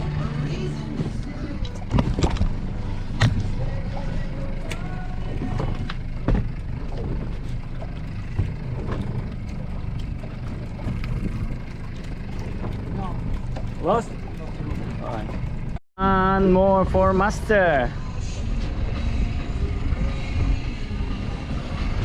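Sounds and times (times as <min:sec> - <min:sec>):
boat engine humming: 0:00.0 - 0:22.0
knocks and clatters on boat: 0:00.9 - 0:04.0, 0:04.8 - 0:15.8.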